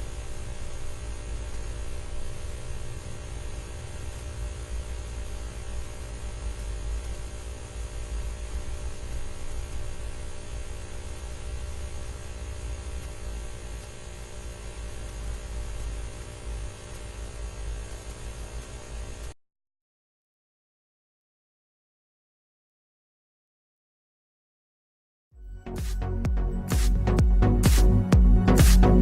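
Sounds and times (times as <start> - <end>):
low hum: 25.4 - 29.0.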